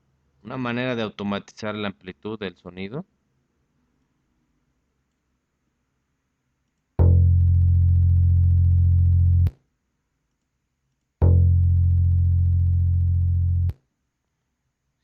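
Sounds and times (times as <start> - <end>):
low sustained instrument note: 7.0 - 9.5, 11.2 - 13.8.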